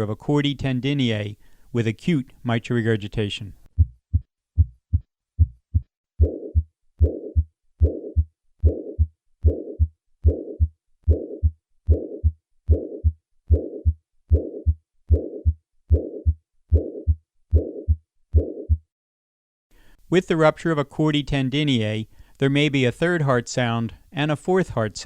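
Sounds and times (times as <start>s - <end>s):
heartbeat: 3.7s - 18.9s
systolic heart murmur: 3.7s - 18.9s.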